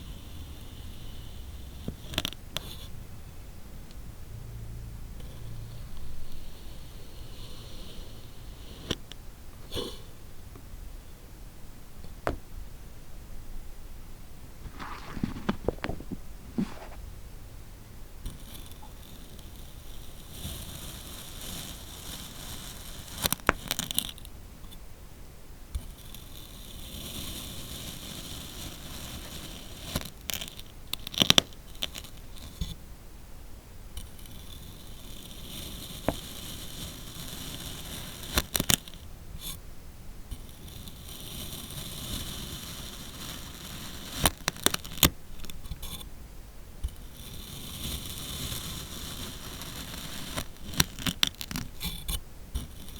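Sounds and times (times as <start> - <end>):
sand being cut crunchy scraping: 14.6 - 17.0, 47.1 - 52.9.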